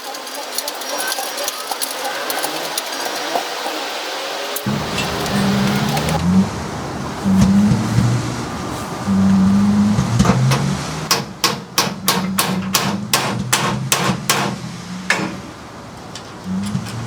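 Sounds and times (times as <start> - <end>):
low hum: 4.6 - 11.1
sharp hammer-like knocks: 10.2 - 15.4.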